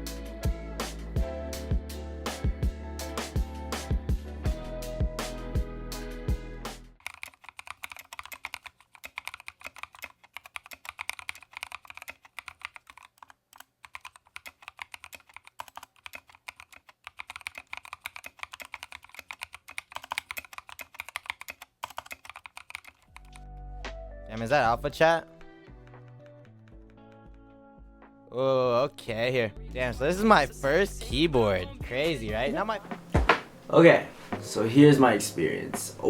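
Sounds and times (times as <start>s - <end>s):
typing on mechanical keyboard: 7.0s - 23.4s.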